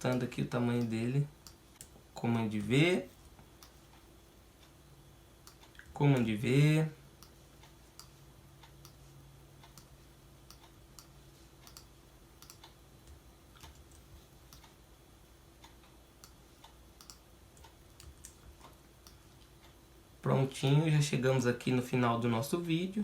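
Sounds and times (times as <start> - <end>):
low steady hum: 0.0 - 23.0
keyboard and mouse clicks: 10.5 - 14.8, 17.0 - 19.2.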